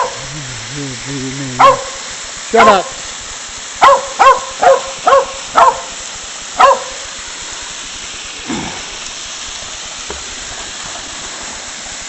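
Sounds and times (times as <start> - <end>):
dog barking: 0.0 - 0.2, 1.6 - 2.0, 3.8 - 6.0, 6.6 - 7.0
waterfall rushing: 0.0 - 12.0.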